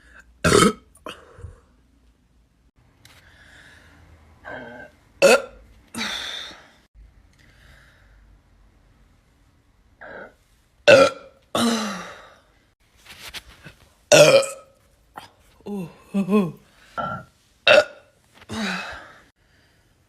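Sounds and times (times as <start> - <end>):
woman burping: 0.4 - 1.6, 4.6 - 6.2, 10.9 - 12.3, 14.1 - 18.9.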